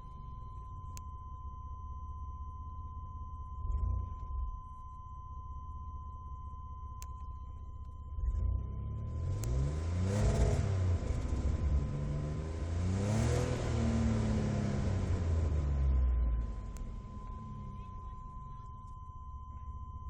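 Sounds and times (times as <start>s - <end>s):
car engine idling and revving: 3.6s - 4.6s, 7.0s - 19.9s
high-pitched tone: 10.2s - 20.0s.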